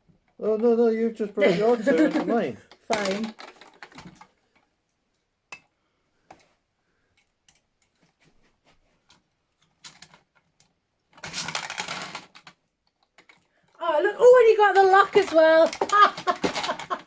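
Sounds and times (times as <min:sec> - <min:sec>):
marbles clattering: 0:01.9 - 0:04.0, 0:11.2 - 0:12.4, 0:14.0 - 0:17.0.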